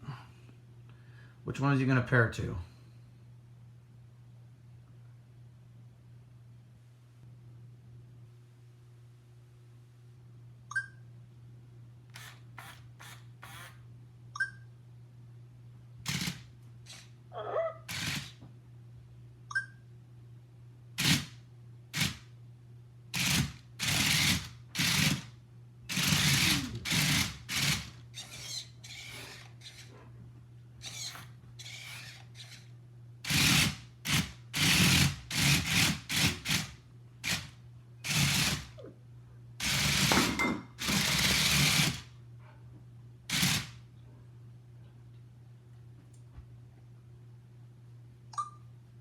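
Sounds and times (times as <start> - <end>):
robot dog motors whirring: 12.2 - 13.8, 16.0 - 18.4, 21.0 - 21.4, 23.2 - 25.3, 25.9 - 30.0, 30.8 - 38.8, 39.6 - 42.1, 43.3 - 43.8.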